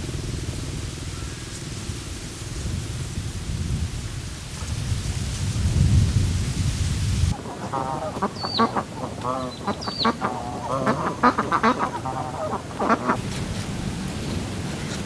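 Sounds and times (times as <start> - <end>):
heavy low rumble: 0.0 - 7.4
rain hissing: 0.0 - 15.0
ducks quacking: 7.3 - 13.3.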